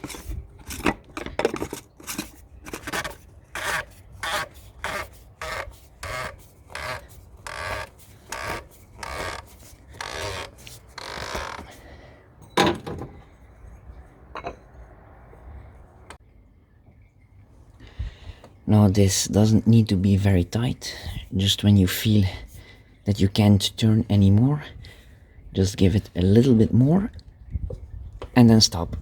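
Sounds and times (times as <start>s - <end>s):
plastic cap scraping while screwed: 0.0s - 11.8s.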